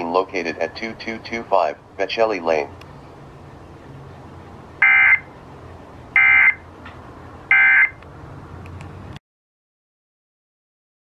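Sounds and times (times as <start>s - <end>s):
data warble tone bursts: 4.8s - 5.3s.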